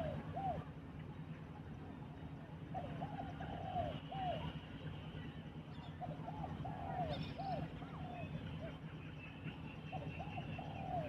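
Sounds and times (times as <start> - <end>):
dove cooing: 0.0 - 0.6, 2.8 - 4.4, 9.9 - 11.0
low steady hum: 0.0 - 11.0.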